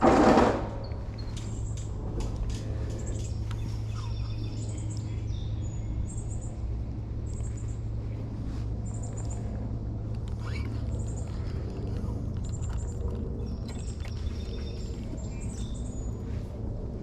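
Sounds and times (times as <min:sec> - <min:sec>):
steady low hum: 0:00.0 - 0:17.0
songbird trilled chirps: 0:02.9 - 0:06.6.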